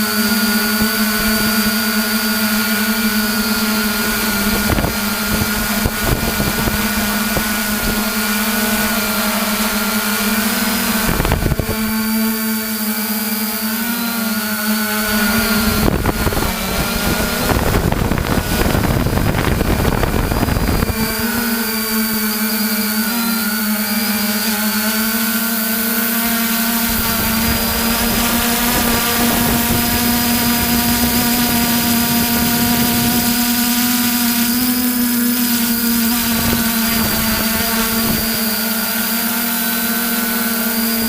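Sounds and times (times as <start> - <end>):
drone propellers humming: 0.0 - 41.0
wind buffeting microphone: 2.5 - 12.3, 15.0 - 22.2, 26.2 - 34.6, 35.5 - 38.9.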